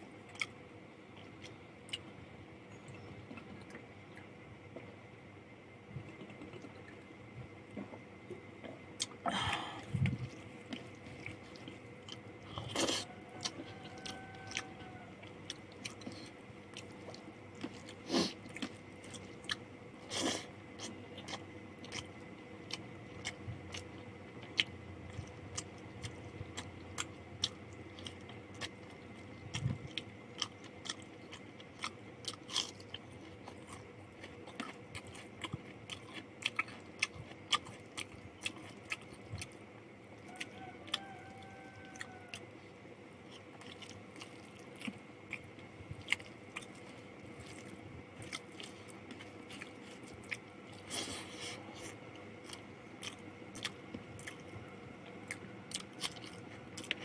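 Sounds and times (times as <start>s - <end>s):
chewing and biting: 10.0s - 39.6s, 43.2s - 57.0s.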